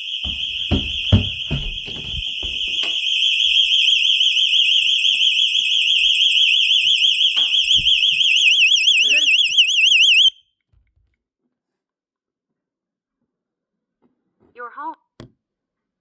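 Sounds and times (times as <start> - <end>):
handling knocks: 0.0 - 3.1
alarm siren warbling: 0.0 - 10.4.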